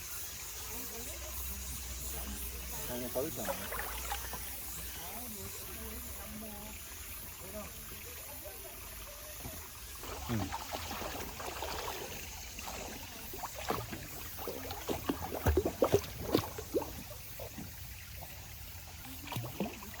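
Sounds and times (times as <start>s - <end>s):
running water: 0.0s - 20.0s
water splashing in a stream: 0.3s - 20.0s.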